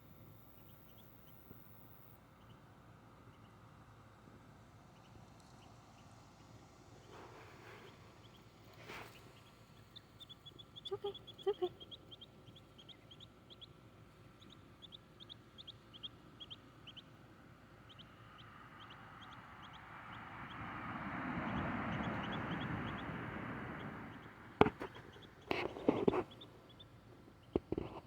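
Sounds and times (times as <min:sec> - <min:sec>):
duckling peeping: 0:00.3 - 0:02.6, 0:07.0 - 0:17.2, 0:17.8 - 0:20.6, 0:21.5 - 0:28.0
sharp knocks: 0:24.6 - 0:26.2.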